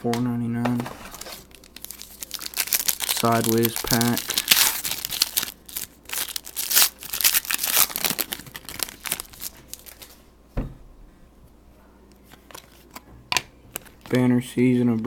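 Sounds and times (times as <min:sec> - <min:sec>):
card pack wrapper crinkling and tearing: 0:01.1 - 0:10.2
soft thump: 0:10.5 - 0:11.1.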